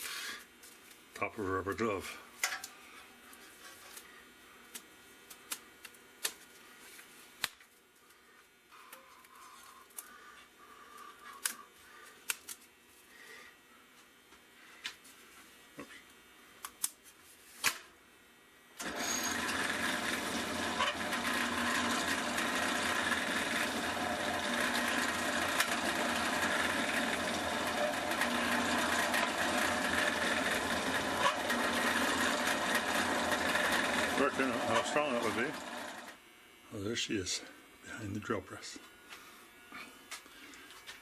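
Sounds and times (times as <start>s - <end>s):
drill press motor running: 18.8s - 36.2s.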